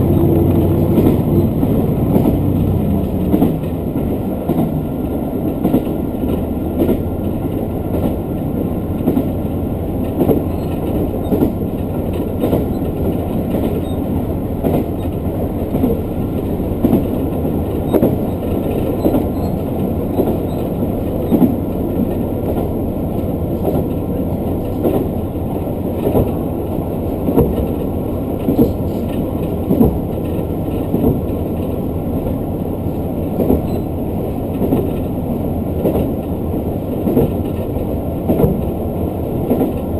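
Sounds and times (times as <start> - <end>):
train wheels rumbling on rail: 0.0 - 39.9
wheels knocking on rail joints: 10.0 - 22.8, 27.2 - 31.7, 33.4 - 33.9, 37.0 - 38.8.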